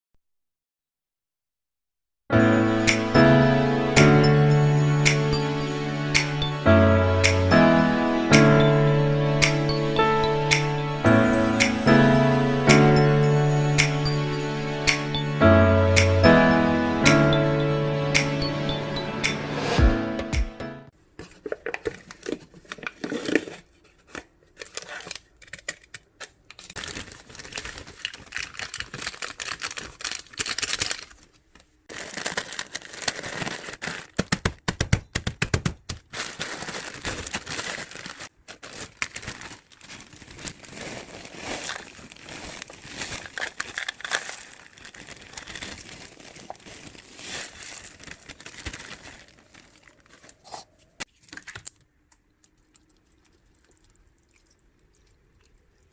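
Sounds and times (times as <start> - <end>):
packaging crinkling and tearing: 21.2 - 51.9.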